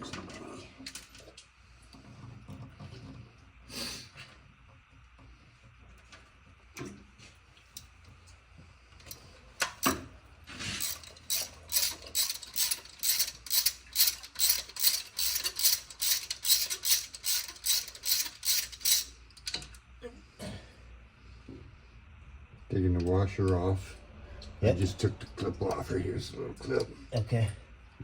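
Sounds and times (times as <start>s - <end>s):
ratchet wrench clicking: 10.8s - 19.8s.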